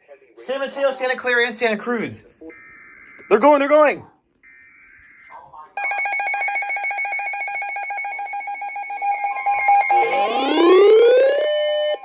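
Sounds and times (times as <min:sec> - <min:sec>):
loud steady attention tone: 0:02.3 - 0:12.0
screeching digital data tones: 0:02.4 - 0:03.8, 0:04.4 - 0:12.0.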